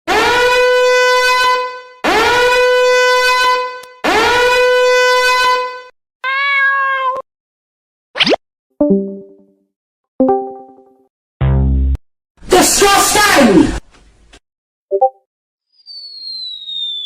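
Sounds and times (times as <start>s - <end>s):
buzzy horn-like tone: 0.1s - 5.9s
wavering note and upward swoop: 15.8s - 17.0s.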